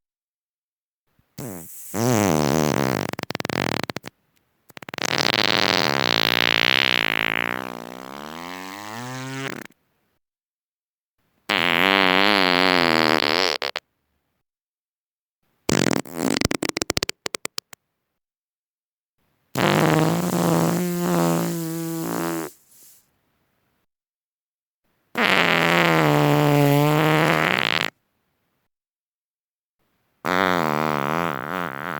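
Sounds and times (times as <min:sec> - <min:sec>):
farts: 0:01.4 - 0:04.1, 0:04.7 - 0:09.8, 0:11.5 - 0:13.8, 0:15.7 - 0:17.8, 0:19.6 - 0:23.1, 0:25.2 - 0:28.0, 0:30.2 - 0:31.9.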